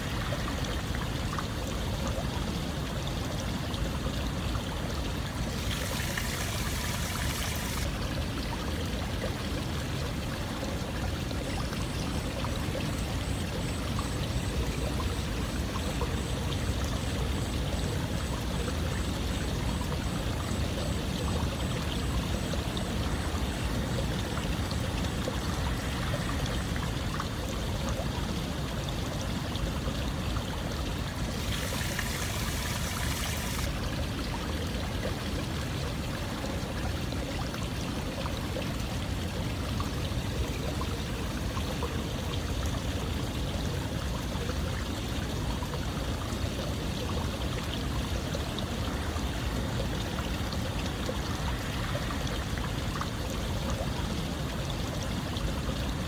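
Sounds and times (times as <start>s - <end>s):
running water rushing: 0.0s - 17.0s, 18.2s - 56.0s.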